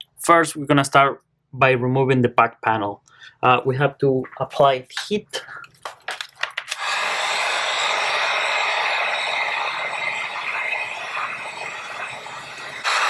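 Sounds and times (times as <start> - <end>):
hot-air blower blowing: 6.7 - 13.0.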